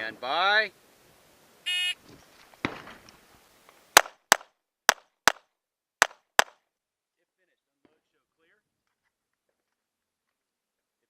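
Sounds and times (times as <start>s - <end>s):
pistol shots: 4.0s - 5.4s, 6.0s - 6.5s.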